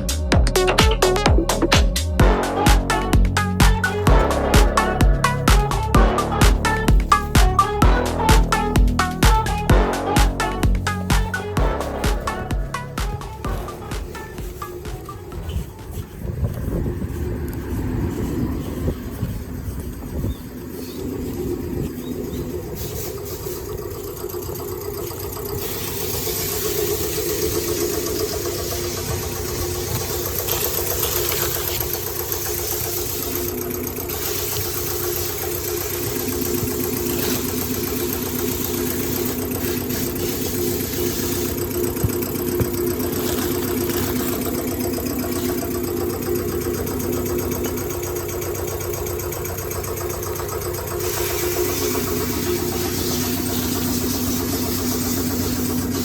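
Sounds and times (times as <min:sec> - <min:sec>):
lower hum: 0:00.0 - 0:24.5
diesel truck engine idling: 0:00.0 - 0:56.0.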